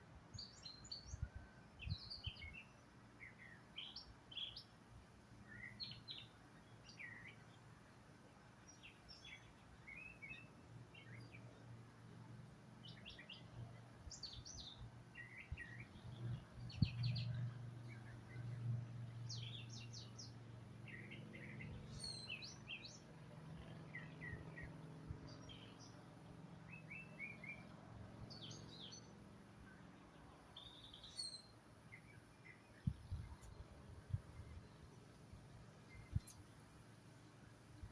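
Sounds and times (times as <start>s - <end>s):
birds chirping: 12.8s - 37.9s.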